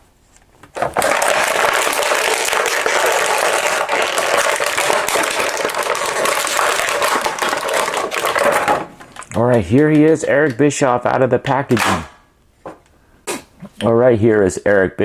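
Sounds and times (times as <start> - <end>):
crowd applauding and cheering: 0.9 - 8.8.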